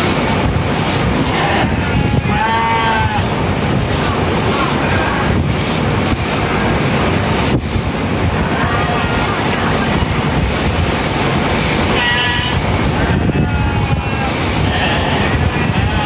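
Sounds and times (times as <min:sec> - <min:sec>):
sheep bleating: 0:01.3 - 0:03.3, 0:12.0 - 0:16.0.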